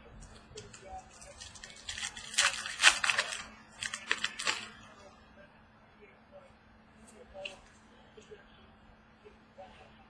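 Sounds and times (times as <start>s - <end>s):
card packs crinkling: 0.3s - 4.8s.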